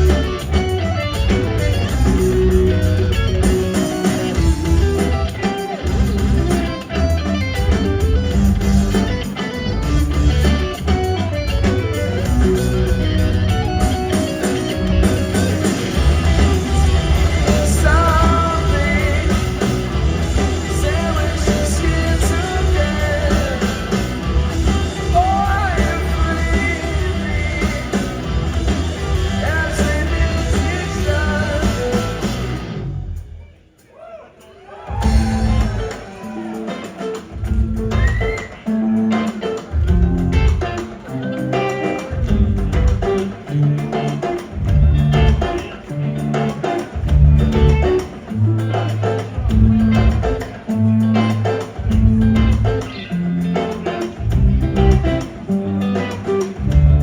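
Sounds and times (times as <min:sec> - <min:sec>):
live rock band playing: 0:00.0 - 0:33.4, 0:34.9 - 0:57.0
person singing: 0:14.2 - 0:32.5.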